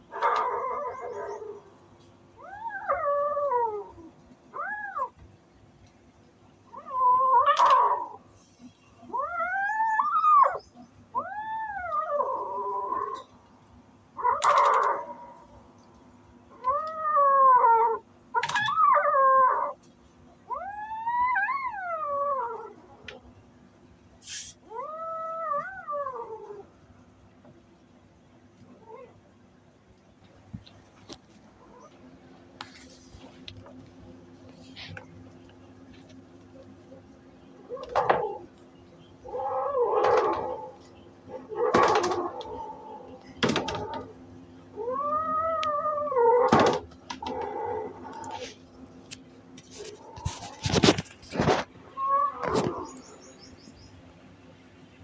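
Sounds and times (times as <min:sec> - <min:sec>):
cat yowling: 0:02.4 - 0:05.2, 0:06.7 - 0:08.2, 0:09.0 - 0:13.3, 0:14.2 - 0:15.4, 0:16.5 - 0:19.8, 0:20.5 - 0:23.0, 0:24.6 - 0:26.7, 0:37.7 - 0:38.5, 0:39.2 - 0:48.6, 0:51.9 - 0:53.1.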